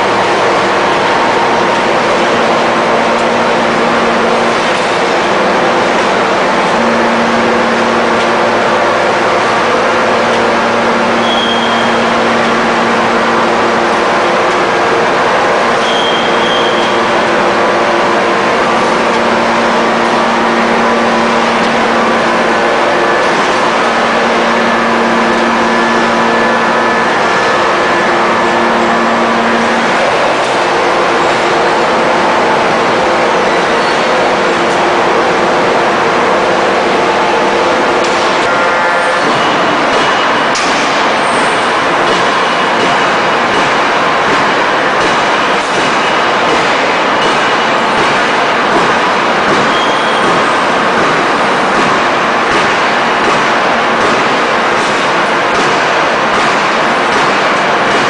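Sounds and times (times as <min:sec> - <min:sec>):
low hum tone: 0:00.0 - 0:43.0
forging press running: 0:00.0 - 0:58.0.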